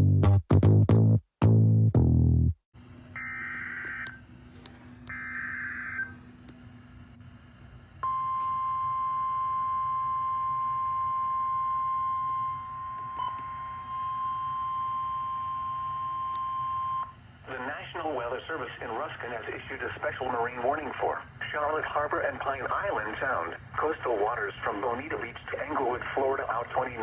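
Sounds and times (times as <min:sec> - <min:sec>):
faint low hum: 0:02.8 - 0:27.0
steady warning alarm tone: 0:03.2 - 0:04.3, 0:05.0 - 0:06.2, 0:08.0 - 0:17.2.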